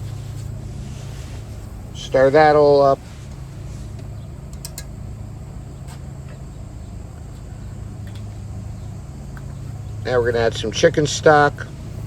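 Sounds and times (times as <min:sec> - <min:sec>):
gas burners humming: 0:00.0 - 0:12.0.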